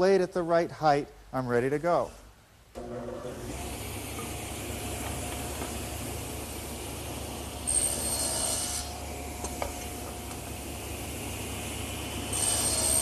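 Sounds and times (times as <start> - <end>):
table saw whining: 5.8 - 13.0.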